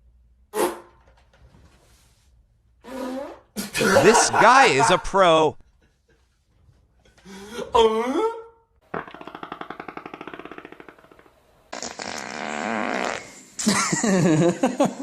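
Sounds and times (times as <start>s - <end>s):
person farting: 8.9s - 13.4s.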